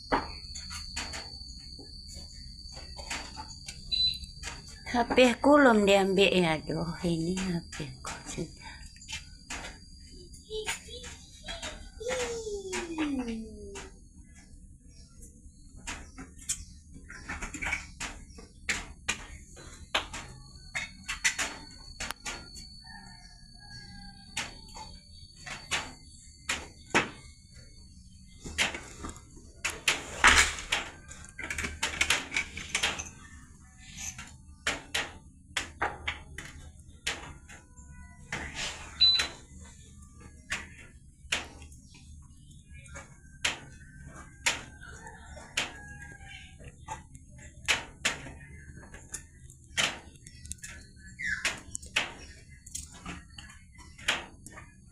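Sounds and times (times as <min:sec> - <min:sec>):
sharp irregular clicks and knocks: 0:00.0 - 0:14.5, 0:15.6 - 0:54.9.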